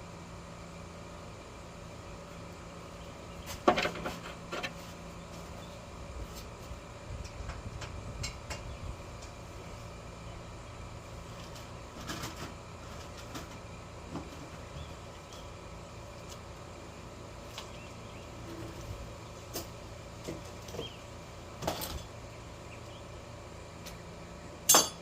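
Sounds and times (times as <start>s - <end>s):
steady low hum: 0.0s - 25.0s
tools clanking: 24.7s - 25.0s.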